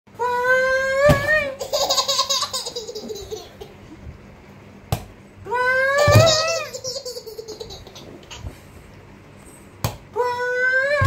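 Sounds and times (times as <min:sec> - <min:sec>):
baby laughing hysterically: 0:01.6 - 0:03.8, 0:06.0 - 0:08.5.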